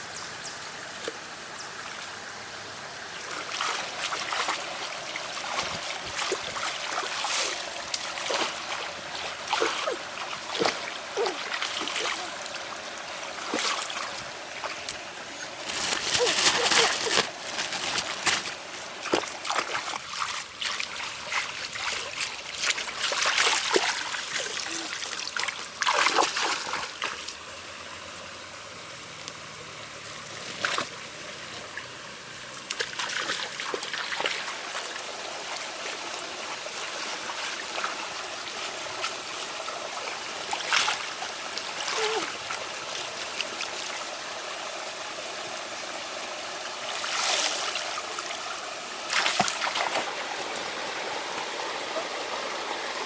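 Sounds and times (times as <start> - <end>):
water splashing: 3.2 - 27.3, 46.8 - 50.8.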